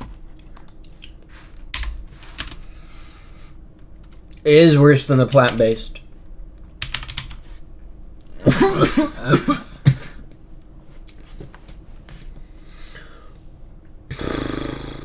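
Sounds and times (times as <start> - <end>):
man coughing: 8.4 - 10.2.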